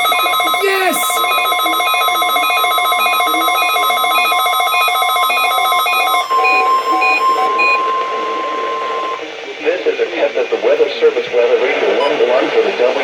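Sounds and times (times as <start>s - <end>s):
steady warning alarm tone: 1.2s - 9.2s
alert radios beeping: 5.2s - 9.2s.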